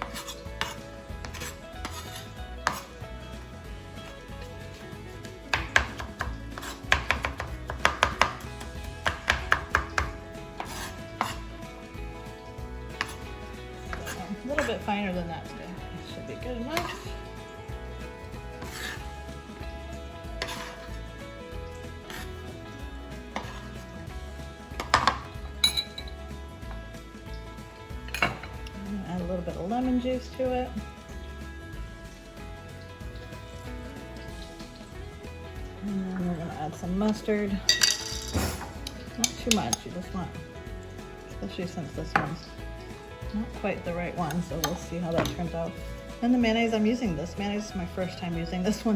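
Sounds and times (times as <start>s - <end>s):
knife chopping on cutting board: 0.0s - 2.9s, 5.5s - 11.5s, 13.0s - 13.3s, 13.9s - 14.8s, 16.8s - 17.1s, 18.6s - 19.0s, 20.4s - 21.0s, 22.1s - 22.4s, 23.3s - 23.7s, 24.8s - 25.4s
utensils clinking against dishes: 0.0s - 3.0s, 16.6s - 17.2s, 20.4s - 21.0s, 24.8s - 26.3s, 28.1s - 28.8s, 37.0s - 40.2s, 44.2s - 45.7s
background music: 0.0s - 48.9s.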